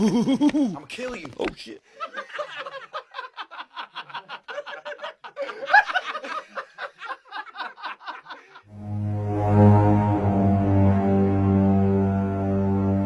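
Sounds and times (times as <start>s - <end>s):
laugh-like vocal snickering: 0.0s - 0.8s
low dark music: 8.7s - 13.0s.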